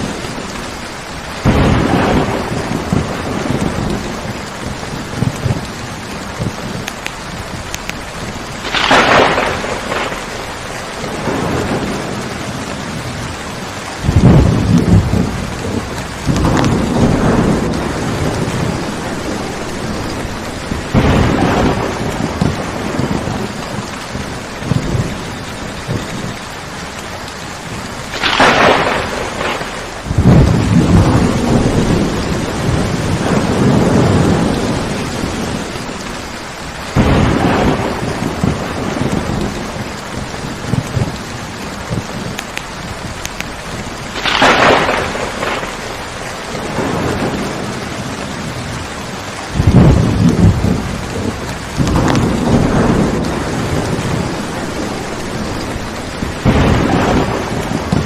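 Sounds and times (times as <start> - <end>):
steady rain: 0.0 - 58.0
thunder cracks and rumbles: 0.0 - 58.0.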